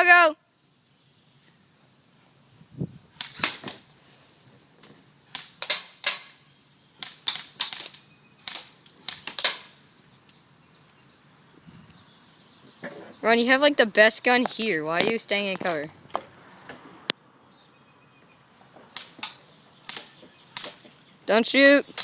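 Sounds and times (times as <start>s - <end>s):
airsoft gun shots: 3.2s - 3.8s, 5.3s - 6.3s, 7.0s - 9.8s, 19.0s - 20.9s.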